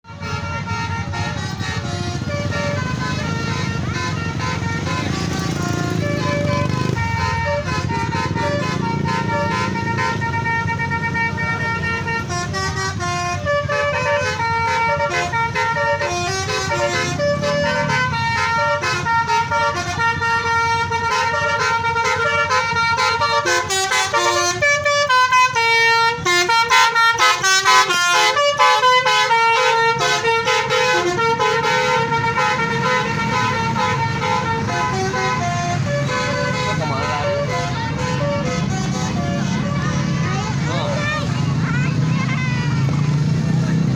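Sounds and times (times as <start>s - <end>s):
musical bus horn tune: 0.0s - 43.9s
engine running: 0.1s - 43.9s.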